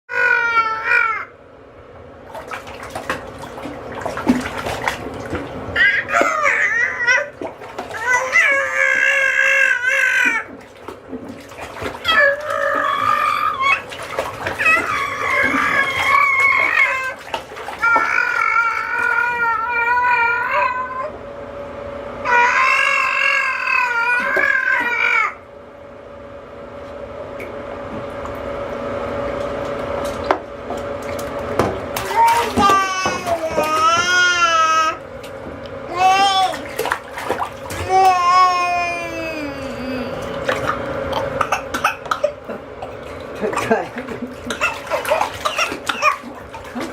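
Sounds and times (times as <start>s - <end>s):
bathwater splashing: 2.2s - 20.0s, 28.0s - 46.9s
baby squealing: 12.0s - 13.9s, 14.6s - 17.2s, 44.6s - 46.3s.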